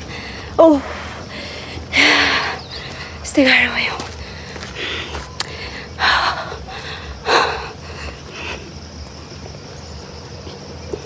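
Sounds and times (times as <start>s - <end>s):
person breathing hard: 0.0s - 3.3s, 4.1s - 9.2s.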